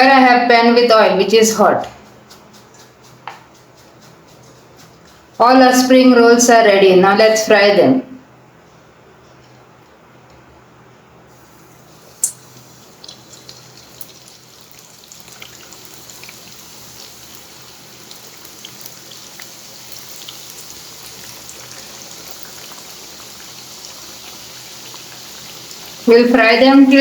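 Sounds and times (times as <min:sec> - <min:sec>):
spring rolls sizzling in hot oil: 0:11.3 - 0:27.0.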